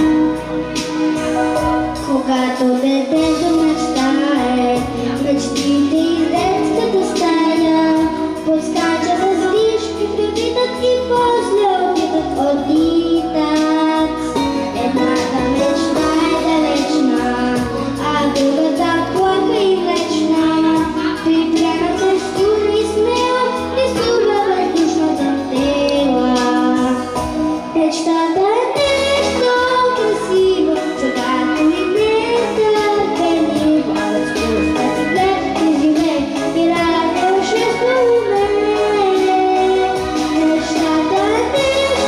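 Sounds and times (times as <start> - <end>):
instrumental accompaniment: 0.0 - 42.0
children singing together: 27.8 - 42.0.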